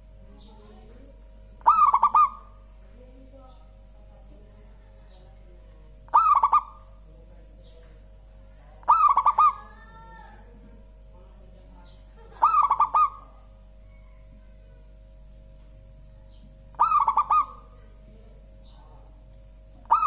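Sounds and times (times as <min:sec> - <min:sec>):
dove cooing: 0:01.6 - 0:02.7, 0:06.1 - 0:07.1, 0:08.8 - 0:10.5, 0:12.2 - 0:14.6, 0:16.7 - 0:18.0.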